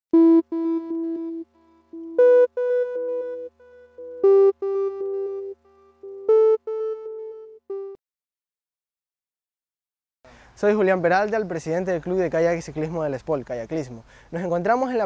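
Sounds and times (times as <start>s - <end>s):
synthesizer melody: 0.2s - 8.0s.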